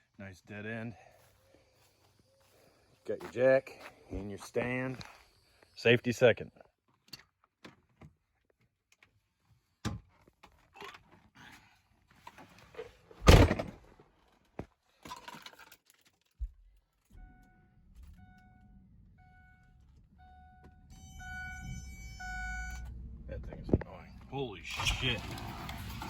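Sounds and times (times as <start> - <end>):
warning chime beeping: 17.2 - 23.0
car engine idling: 17.4 - 26.0.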